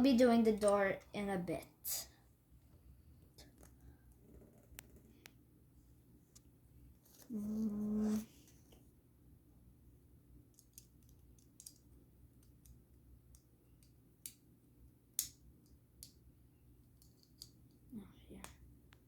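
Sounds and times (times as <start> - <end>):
plastic bricks clicking together: 10.6 - 11.8.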